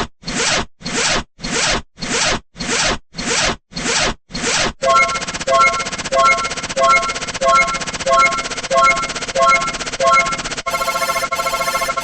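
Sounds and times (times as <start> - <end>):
electronic beeping: 4.8 - 12.0.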